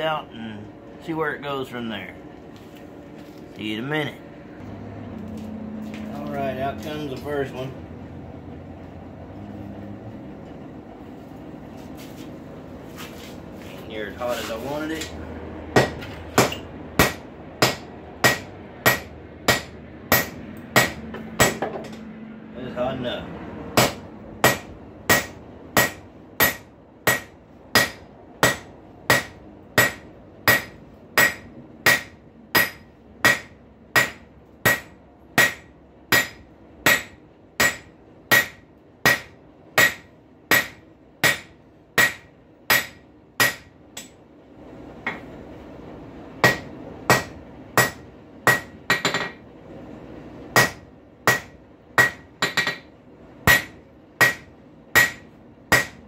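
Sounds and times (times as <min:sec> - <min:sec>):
hammer ringing on anvil: 0:53.5 - 0:56.0.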